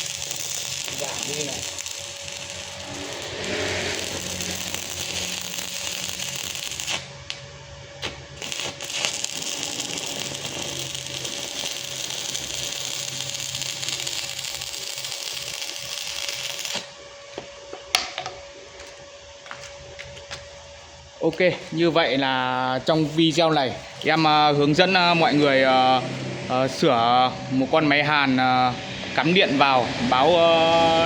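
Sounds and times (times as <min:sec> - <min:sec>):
welding arc hissing and crackling: 0:00.0 - 0:07.4, 0:08.0 - 0:17.0, 0:21.2 - 0:26.2, 0:30.2 - 0:31.0.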